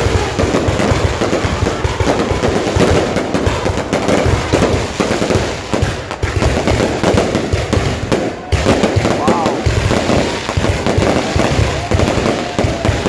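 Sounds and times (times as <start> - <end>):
fireworks crackling and popping: 0.0 - 13.0.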